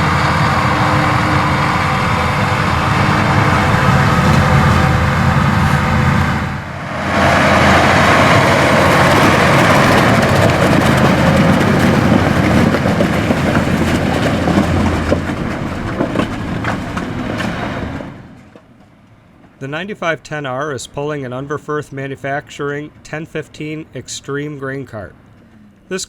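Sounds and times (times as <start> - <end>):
heavy diesel engine drone: 0.0 - 26.0.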